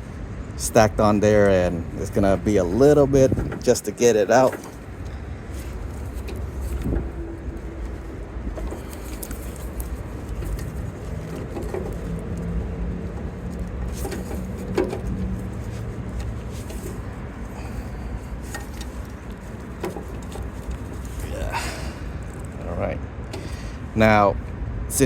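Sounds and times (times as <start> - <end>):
hands clicking and scraping connector: 2.8 - 21.4.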